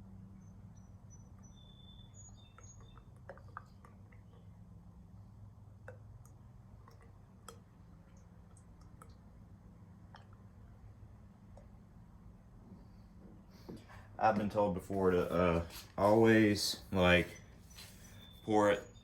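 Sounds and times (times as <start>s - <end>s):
low steady hum: 0.0s - 19.0s
bird chirps: 0.3s - 4.6s, 16.9s - 19.0s
oil trickling and glugging: 1.3s - 12.3s.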